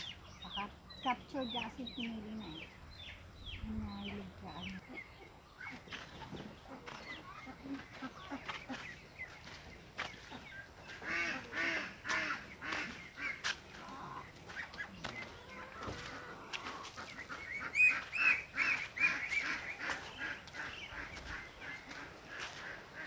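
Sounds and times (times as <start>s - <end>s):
poultry calling: 0.0s - 23.0s.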